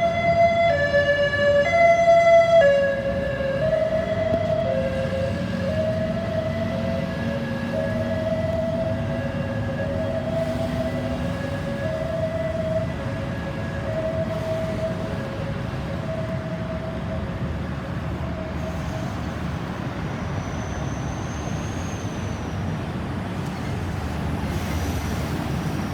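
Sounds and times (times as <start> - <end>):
ambulance siren two-tone: 0.0 - 19.4
traffic rumble: 0.0 - 25.9.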